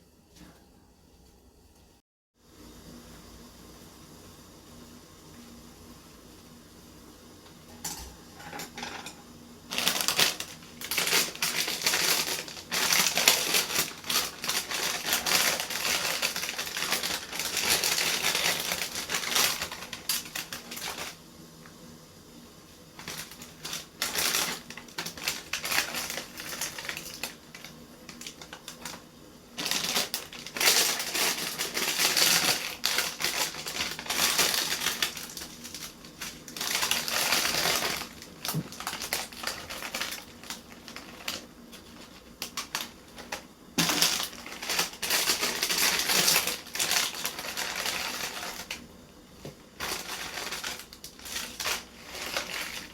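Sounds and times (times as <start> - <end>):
rapid crackling and crunching clicks: 9.7 - 21.2, 23.0 - 29.0, 29.6 - 48.8, 49.7 - 52.9.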